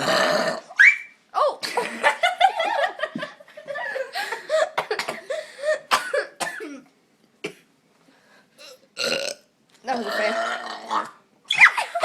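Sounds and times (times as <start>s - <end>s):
person coughing: 4.8s - 7.7s.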